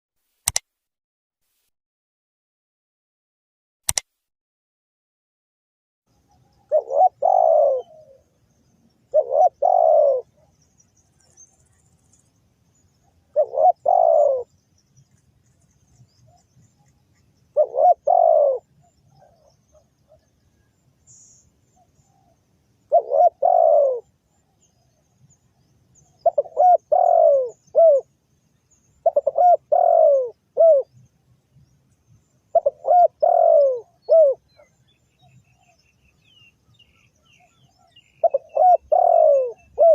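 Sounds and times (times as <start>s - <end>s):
dove cooing: 6.3s - 8.3s, 9.1s - 10.6s, 12.8s - 14.5s, 17.5s - 20.4s, 21.7s - 25.0s, 26.0s - 28.1s, 29.0s - 31.0s, 32.5s - 35.7s, 37.5s - 39.9s.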